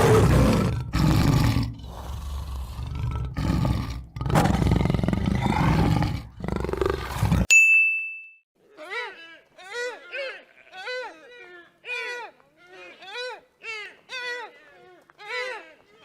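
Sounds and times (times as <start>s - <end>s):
tiger roaring and growling: 0.0s - 7.5s.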